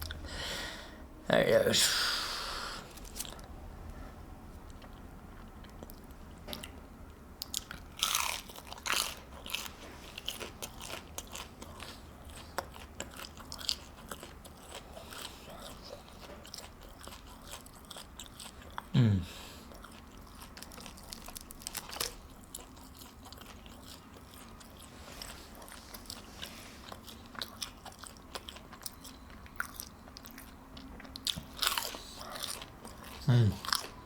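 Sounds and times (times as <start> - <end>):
person chewing: 2.6 - 3.6, 4.6 - 6.8, 7.4 - 34.0
crunchy bites: 7.4 - 11.5.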